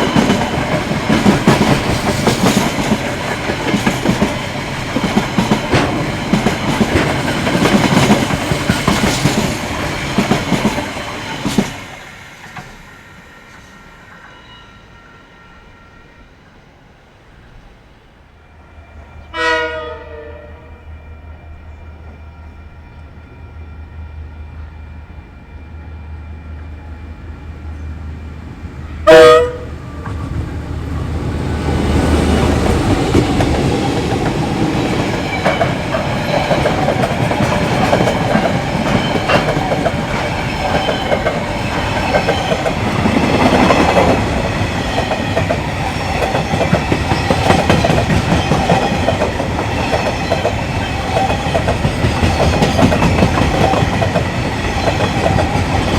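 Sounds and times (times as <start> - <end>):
train engine drone: 0.0 - 55.9
loud train horn blast: 19.2 - 21.6, 28.9 - 30.2.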